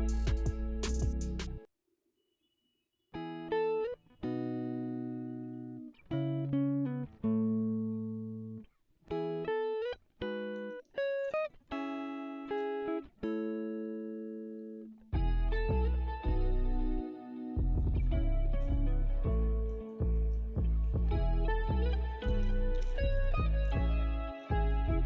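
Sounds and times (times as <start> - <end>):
deep bass: 0.0 - 1.6, 15.2 - 17.0, 17.6 - 25.0
slow plucked notes music: 0.0 - 1.7, 10.2 - 25.0.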